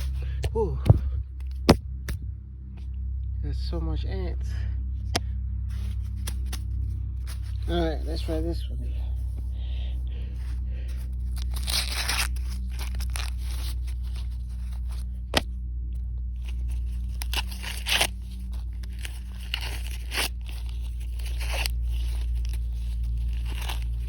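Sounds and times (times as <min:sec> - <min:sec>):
steady low hum: 0:00.0 - 0:24.0
corn husks tearing: 0:05.7 - 0:09.3, 0:10.4 - 0:15.5, 0:16.4 - 0:24.0.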